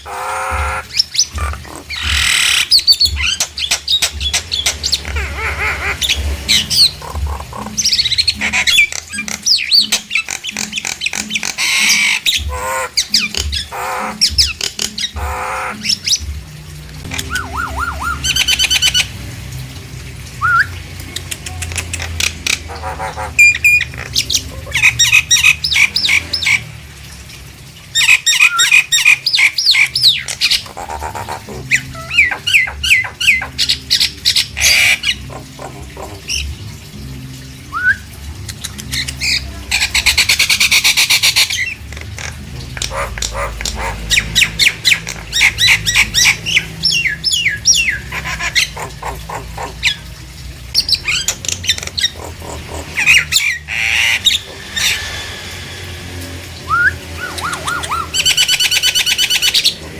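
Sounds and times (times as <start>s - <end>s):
myna whistling and squawking: 17.1s - 19.1s, 20.4s - 20.8s, 21.5s - 26.2s, 28.0s - 36.6s, 37.7s - 38.1s, 56.6s - 59.9s.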